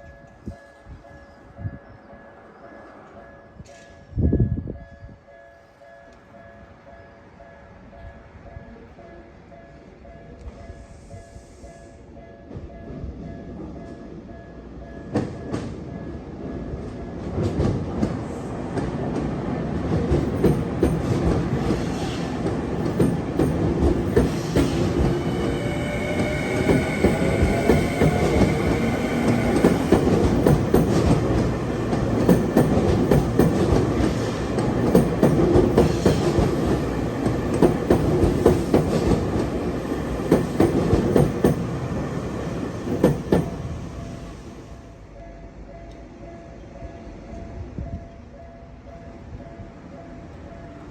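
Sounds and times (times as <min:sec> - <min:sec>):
train wheels clattering over rail joints: 0:17.2 - 0:25.3, 0:26.0 - 0:42.0, 0:42.7 - 0:43.7.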